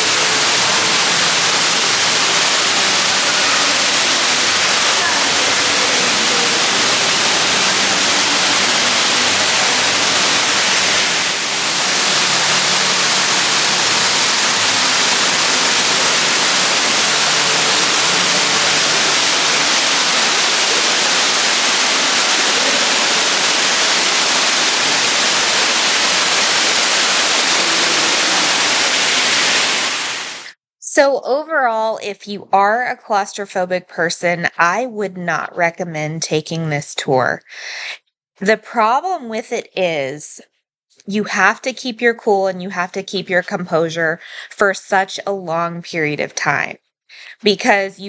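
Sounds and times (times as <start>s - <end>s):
waterfall pouring into pool: 0.0s - 30.6s.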